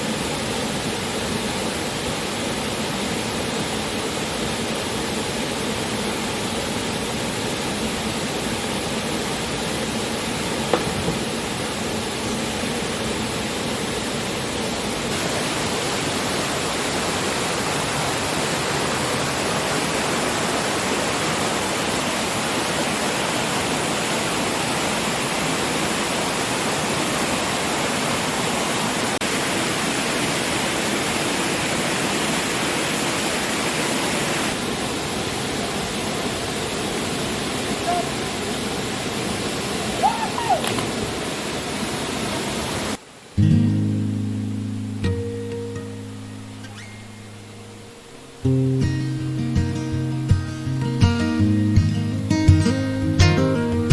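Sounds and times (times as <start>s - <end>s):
brief knock: 10.7s - 11.2s
waterfall pouring: 15.1s - 43.0s.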